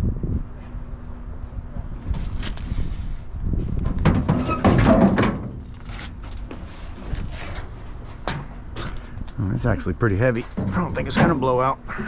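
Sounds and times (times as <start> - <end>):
scrap and cardboard handling: 2.1 - 8.4.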